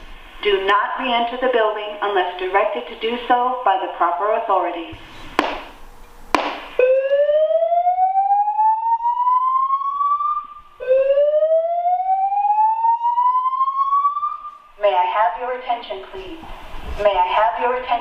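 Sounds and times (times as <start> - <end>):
rising whoop alarm tone: 6.8 - 14.5.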